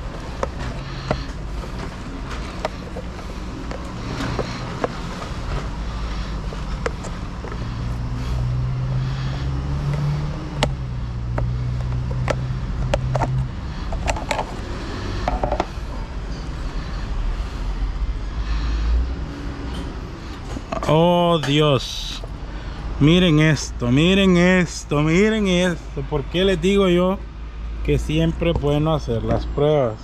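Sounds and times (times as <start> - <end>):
hand tools prying plastic casing: 0.1 - 7.6, 9.9 - 14.6.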